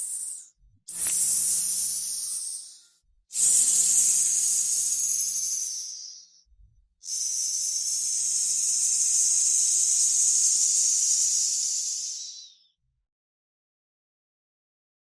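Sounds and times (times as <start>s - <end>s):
snake hissing: 0.0s - 2.8s, 3.4s - 6.2s, 7.1s - 12.3s.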